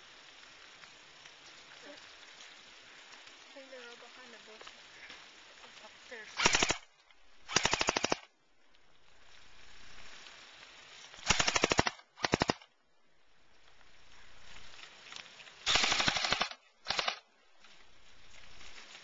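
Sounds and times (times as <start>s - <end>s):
airsoft rifle automatic bursts: 6.4s - 6.9s, 7.5s - 8.3s, 11.2s - 12.7s, 15.7s - 17.2s.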